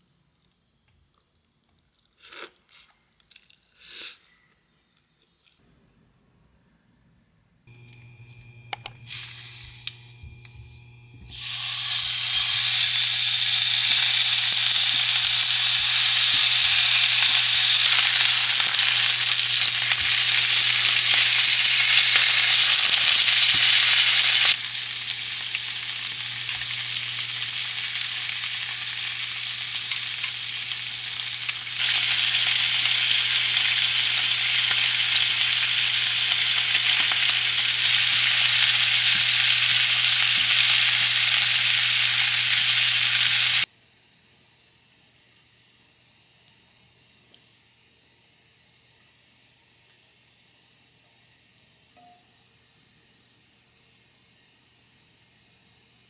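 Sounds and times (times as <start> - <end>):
food sizzling in a pan: 9.0 - 43.7.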